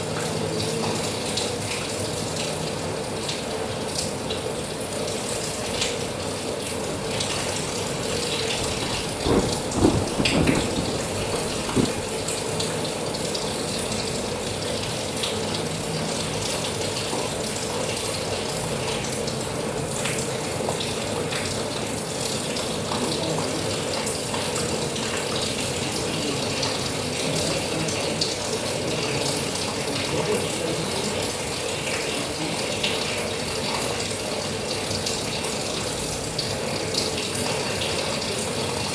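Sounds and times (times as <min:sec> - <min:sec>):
heavy rain patter: 0:00.0 - 0:38.9
loud knocks: 0:08.4 - 0:12.3.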